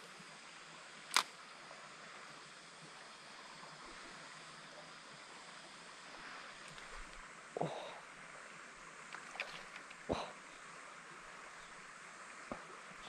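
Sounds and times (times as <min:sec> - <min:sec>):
stream flowing: 0:00.0 - 0:13.0
sharp click: 0:01.1 - 0:01.3.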